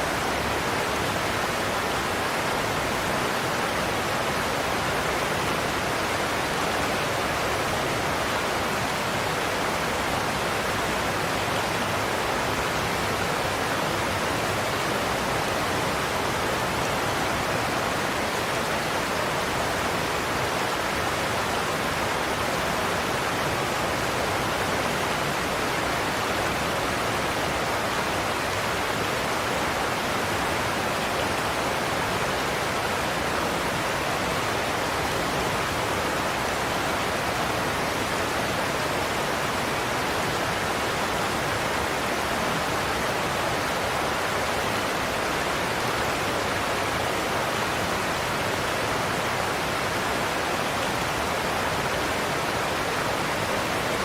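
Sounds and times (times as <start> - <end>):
waterfall roaring: 0.0 - 54.0.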